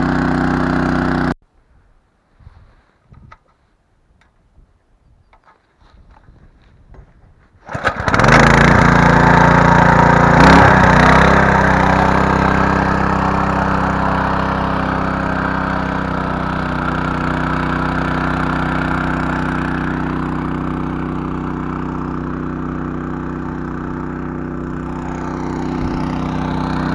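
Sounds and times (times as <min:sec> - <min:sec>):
small petrol engine running: 0:00.0 - 0:01.4, 0:07.6 - 0:26.9.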